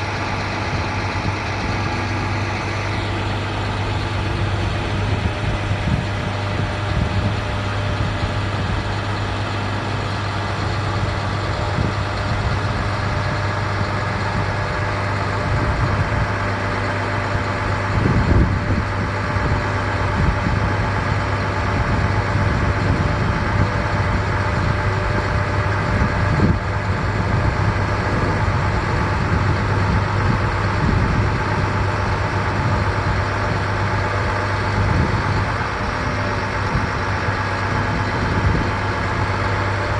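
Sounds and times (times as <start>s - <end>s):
diesel truck engine idling: 0.0s - 39.9s.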